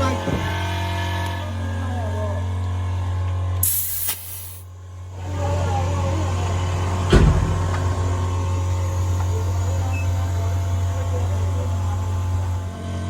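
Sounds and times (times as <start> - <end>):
air hissing: 3.6 - 4.7.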